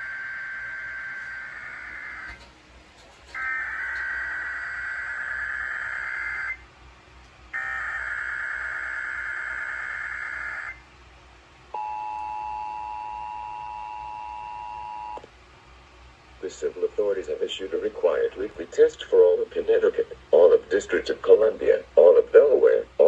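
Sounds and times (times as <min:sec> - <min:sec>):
screechy digital data bursts: 0:03.3 - 0:06.6.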